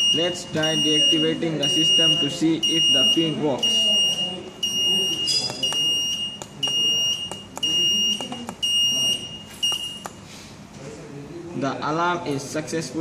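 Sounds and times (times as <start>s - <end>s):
high-pitched alarm beeping: 0.0s - 10.2s.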